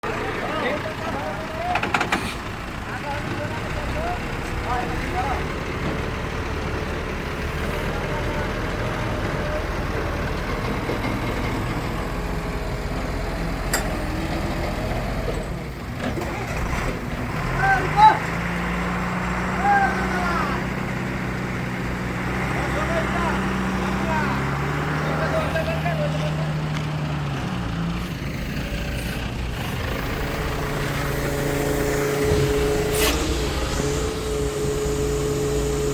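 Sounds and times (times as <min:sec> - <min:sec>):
diesel engine rumbling: 0:00.0 - 0:35.9
steady whine: 0:28.6 - 0:35.9.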